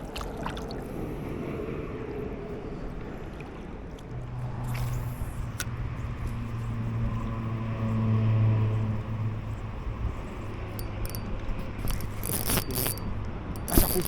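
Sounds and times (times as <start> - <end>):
low motor hum: 2.9 - 14.0.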